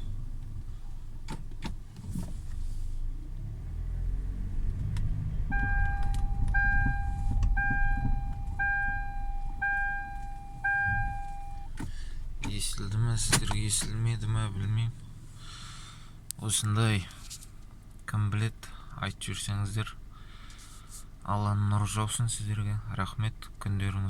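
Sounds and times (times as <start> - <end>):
car cabin road rumble: 0.0 - 24.0
dashboard warning chime beeping: 5.4 - 11.8.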